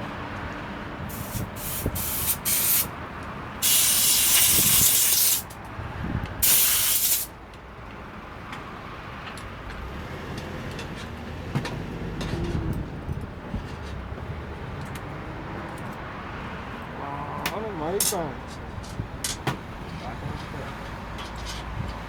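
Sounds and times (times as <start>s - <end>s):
pressurized spray hissing: 1.1s - 2.9s, 3.6s - 5.5s, 6.4s - 7.3s.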